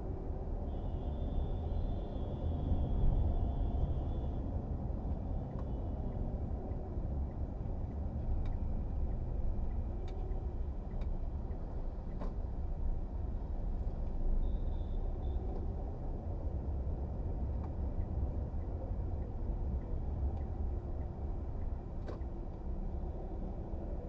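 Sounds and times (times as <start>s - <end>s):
car engine and road noise: 0.0s - 24.0s
faint ticks: 10.9s - 12.4s.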